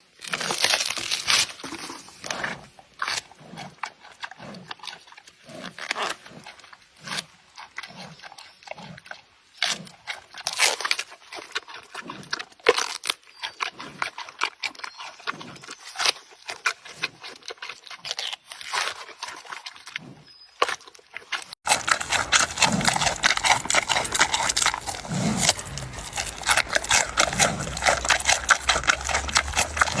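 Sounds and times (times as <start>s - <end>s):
panda crunching and chewing: 0.2s - 6.5s, 7.8s - 30.0s
food snapping and crackling: 21.7s - 30.0s.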